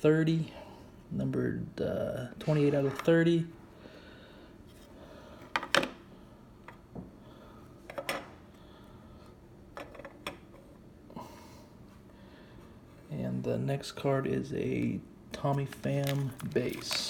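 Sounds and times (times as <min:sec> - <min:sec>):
cards and packaging clicks and scrapes: 0:15.4 - 0:17.0.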